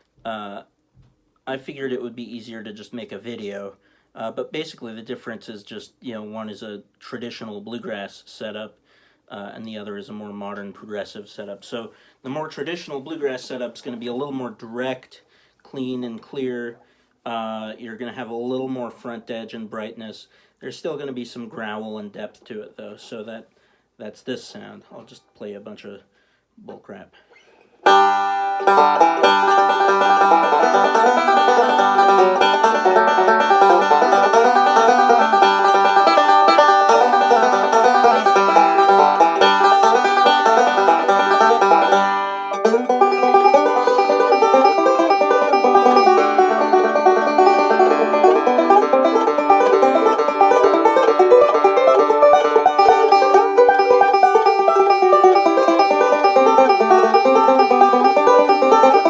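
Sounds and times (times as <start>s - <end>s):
banjo picked bluegrass style: 27.8s - 59.0s.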